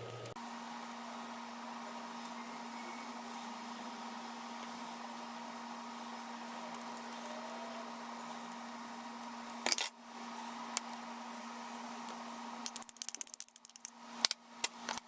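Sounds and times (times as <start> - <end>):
steady electrical hum: 0.0 - 15.0.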